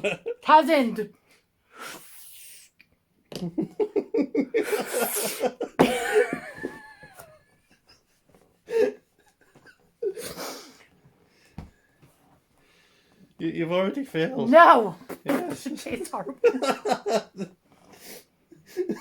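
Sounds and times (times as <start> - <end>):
person laughing hard: 0.0 - 0.4, 3.4 - 7.3.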